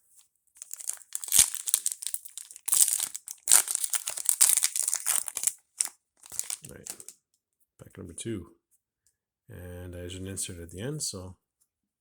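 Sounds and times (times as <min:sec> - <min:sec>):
card pack wrapper crinkling: 0:00.6 - 0:07.1.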